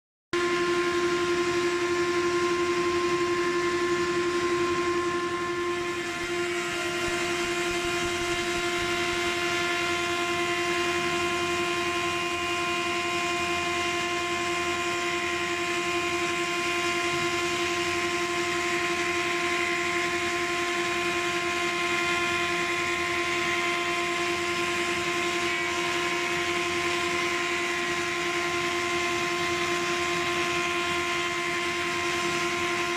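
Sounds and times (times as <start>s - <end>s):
wood moulding machine whine: 0.4s - 32.9s.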